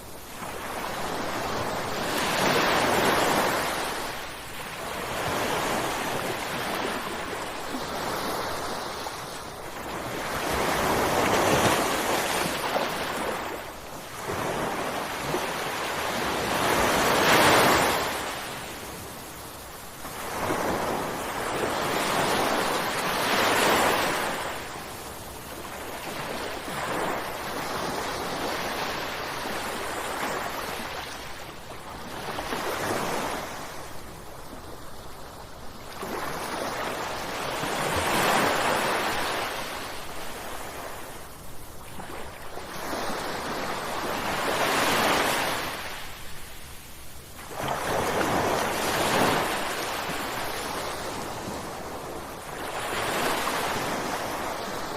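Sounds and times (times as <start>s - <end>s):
ocean waves crashing: 0.0s - 18.9s, 20.1s - 24.7s.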